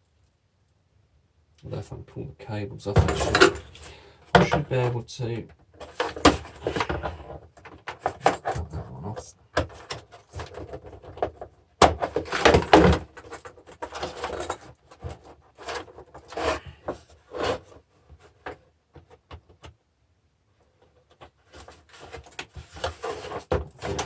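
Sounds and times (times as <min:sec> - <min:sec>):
metal and plastic parts clattering: 0:02.9 - 0:04.7, 0:05.8 - 0:08.7, 0:09.6 - 0:17.1.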